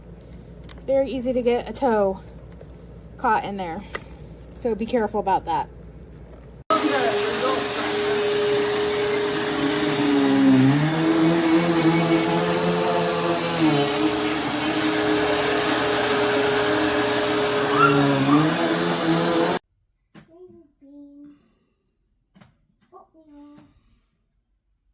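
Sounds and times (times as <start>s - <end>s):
vacuum cleaner running: 6.7s - 19.6s.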